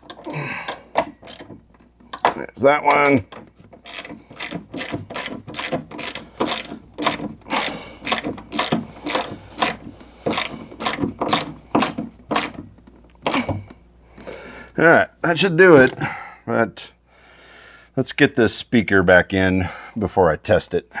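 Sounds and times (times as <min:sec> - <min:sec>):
ratchet wrench clicking: 0:00.0 - 0:01.5, 0:02.9 - 0:12.6.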